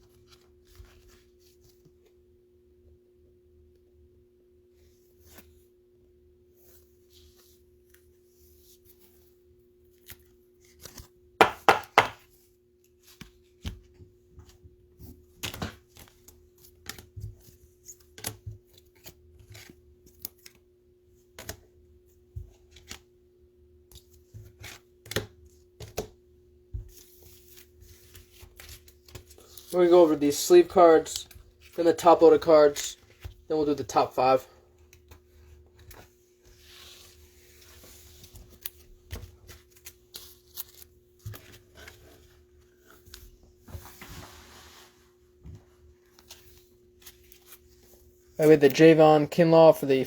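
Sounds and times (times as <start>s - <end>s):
cards tapping and clicking: 10.8s - 12.3s, 23.9s - 26.2s.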